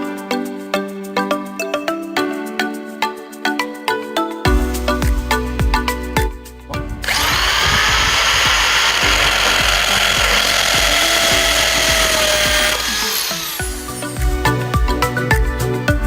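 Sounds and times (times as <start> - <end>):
electric drill running: 7.0 - 13.8.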